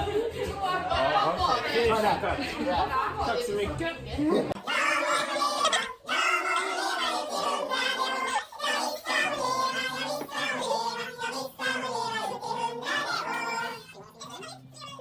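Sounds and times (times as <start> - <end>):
person singing a song: 4.6 - 15.0.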